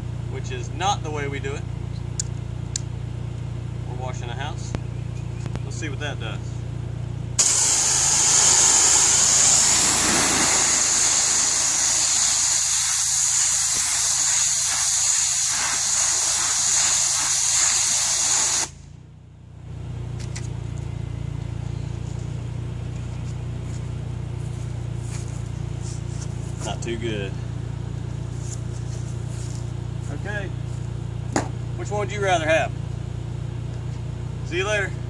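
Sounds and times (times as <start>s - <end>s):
high-pressure water jet hissing: 7.4s - 18.7s.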